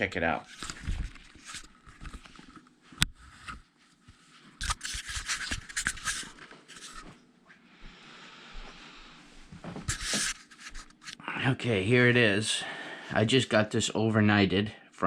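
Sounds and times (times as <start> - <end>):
package rustling and scraping: 0.4 - 2.6, 4.5 - 7.2, 9.7 - 11.2.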